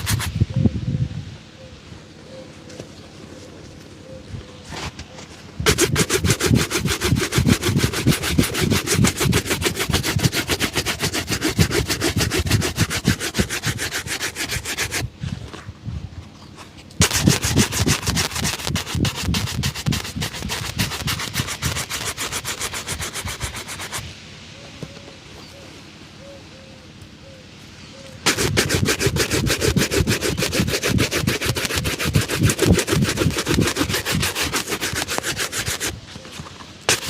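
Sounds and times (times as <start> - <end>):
leather shoe being buffed: 0.0 - 0.3, 5.6 - 15.1, 17.0 - 24.0, 28.2 - 37.0.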